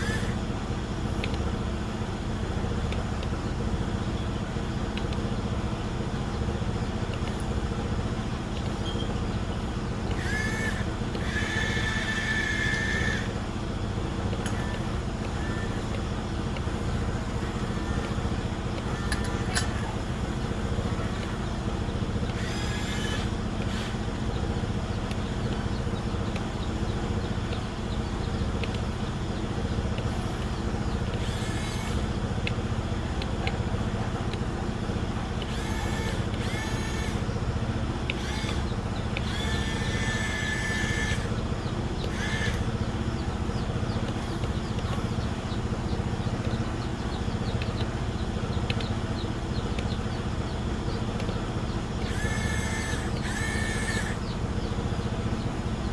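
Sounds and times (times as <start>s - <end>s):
heavy engine rumbling: 0.0s - 55.9s
high-pitched squeals: 10.2s - 13.4s.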